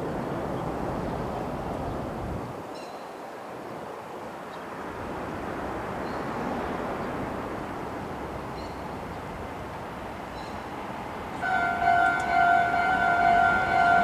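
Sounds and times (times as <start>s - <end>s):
outdoor background noise: 0.0s - 14.0s
level-crossing warning bell: 11.4s - 14.0s.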